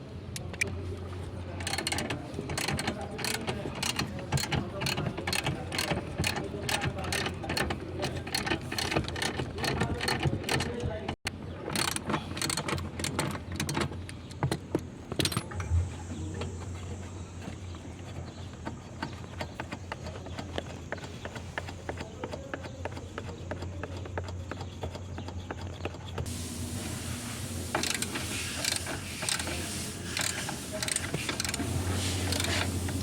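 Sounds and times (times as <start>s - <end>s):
spanner clicking on nuts: 1.6s - 10.9s, 11.7s - 15.8s, 17.4s - 26.3s, 27.7s - 33.0s.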